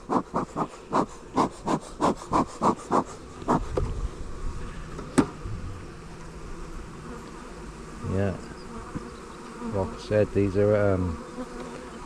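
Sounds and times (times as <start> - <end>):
honey bees buzzing: 0.0 - 12.0.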